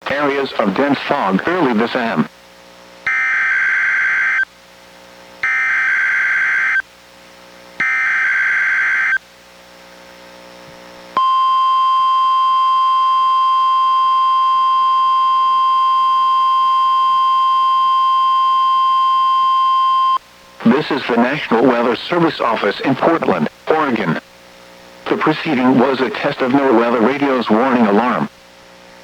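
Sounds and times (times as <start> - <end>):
steady warning alarm tone: 3.1 - 4.4, 5.4 - 6.8, 7.8 - 9.2, 11.2 - 22.3.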